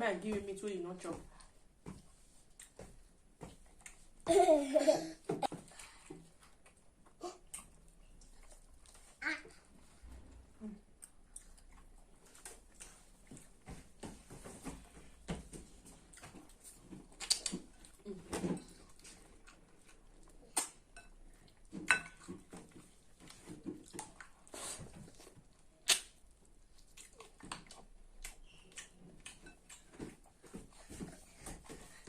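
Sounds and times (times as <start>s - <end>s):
chewing and mouth smacks: 5.7s - 9.2s, 11.0s - 13.6s, 16.1s - 18.1s, 18.7s - 31.9s.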